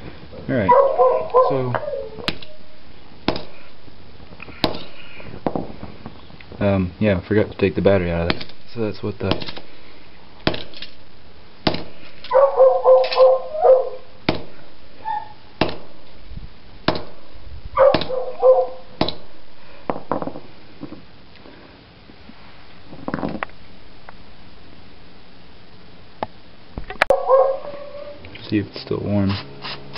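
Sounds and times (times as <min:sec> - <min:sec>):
dog barking: 0:00.7 - 0:02.6, 0:12.3 - 0:14.1, 0:15.0 - 0:15.4, 0:17.8 - 0:18.9, 0:27.1 - 0:28.2.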